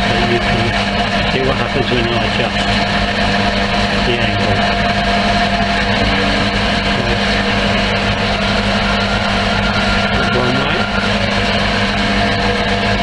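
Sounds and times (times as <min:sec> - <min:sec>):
bandsaw running: 0:00.0 - 0:13.0.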